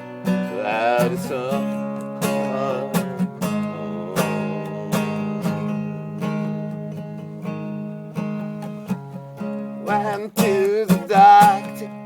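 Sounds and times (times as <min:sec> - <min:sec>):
acoustic guitar strumming chords: 0:00.0 - 0:12.0.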